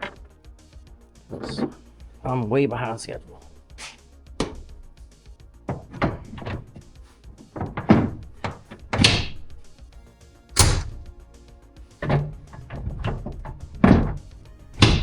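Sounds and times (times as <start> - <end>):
parts knocking and thudding: 0.0 - 0.2, 1.3 - 1.9, 3.2 - 5.0, 5.7 - 9.9, 10.6 - 11.2, 12.0 - 15.0
background music: 0.0 - 15.0.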